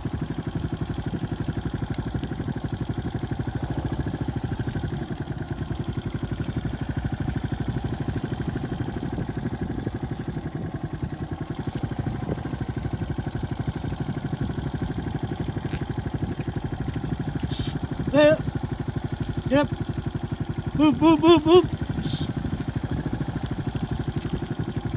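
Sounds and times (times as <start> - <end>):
tractor engine running: 0.0 - 24.9.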